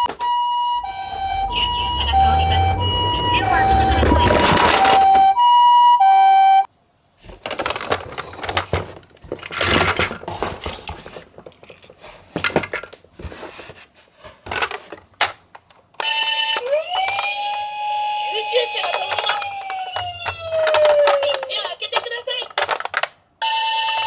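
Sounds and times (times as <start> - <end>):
toy electronic siren: 0.0 - 6.7, 16.0 - 21.5, 23.4 - 24.0
toy cars clattering: 0.1 - 5.3, 7.3 - 24.0.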